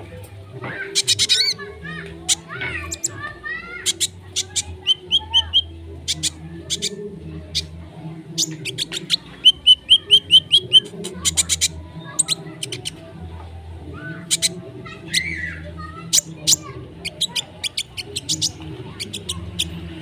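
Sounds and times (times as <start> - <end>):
bird singing: 0.9 - 1.6, 2.3 - 7.7, 8.4 - 13.0, 16.1 - 20.0.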